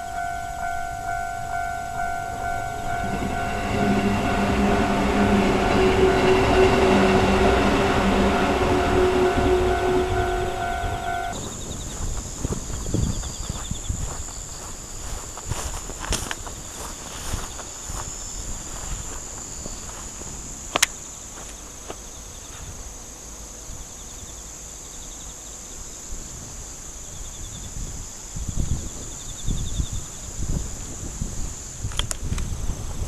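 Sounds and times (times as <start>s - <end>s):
insect pulsing trill: 0.0s - 15.1s
high-pitched insect chorus: 0.0s - 33.0s
footsteps through grass: 11.6s - 20.4s.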